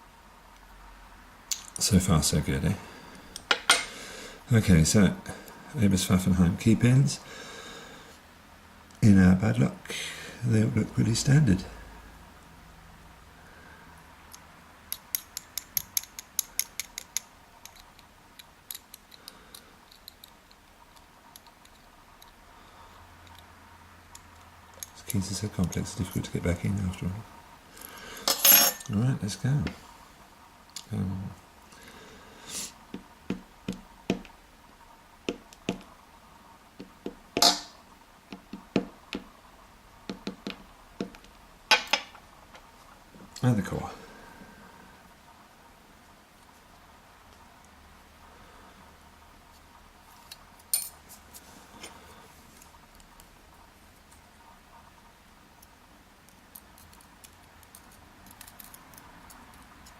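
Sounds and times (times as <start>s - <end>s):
metal padlock parts clicking: 14.9s - 22.4s, 56.5s - 59.8s.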